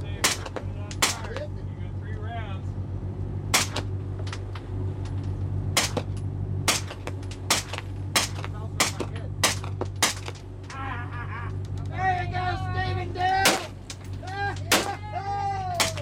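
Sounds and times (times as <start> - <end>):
steady low hum: 0.0 - 16.0
gunshots: 3.5 - 3.9.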